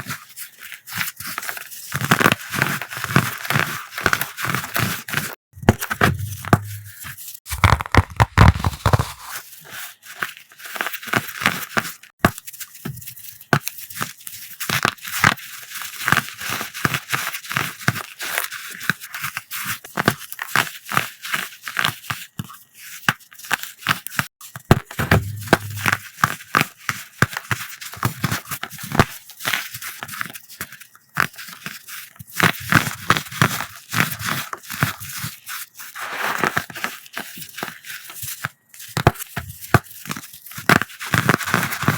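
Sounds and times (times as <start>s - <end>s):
powder blocks crunching by hand: 5.6s - 9.4s.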